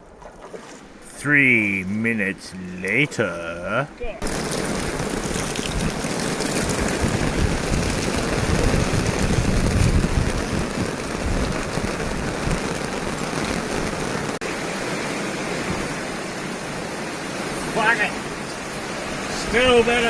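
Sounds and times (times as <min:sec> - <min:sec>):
heavy rain pouring: 0:01.1 - 0:20.0.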